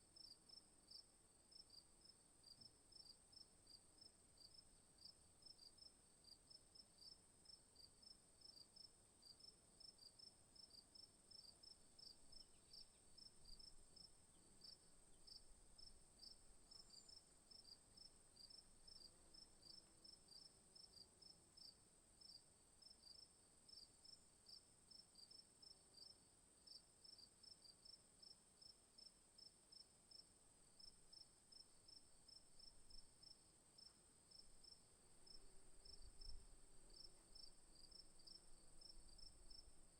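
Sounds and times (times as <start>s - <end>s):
crickets chirping: 7.0s - 25.4s, 29.7s - 39.9s.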